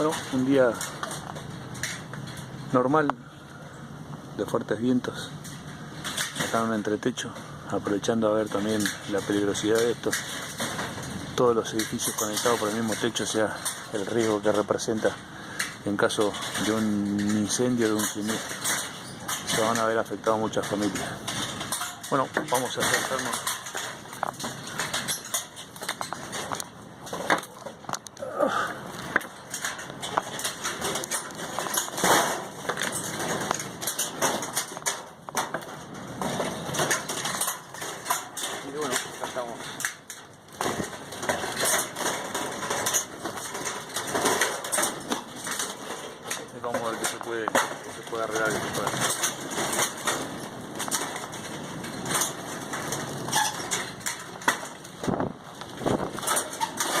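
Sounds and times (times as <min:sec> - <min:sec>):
knocks and clatter: 0:00.0 - 0:57.0
strong wind: 0:47.6 - 0:57.0.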